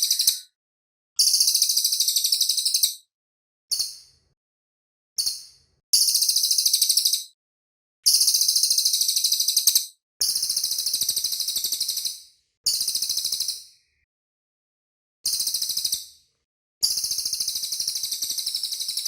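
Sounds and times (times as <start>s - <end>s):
songbird high-pitched trills: 0.0s - 0.6s, 1.2s - 3.0s, 6.0s - 7.3s, 8.2s - 9.8s.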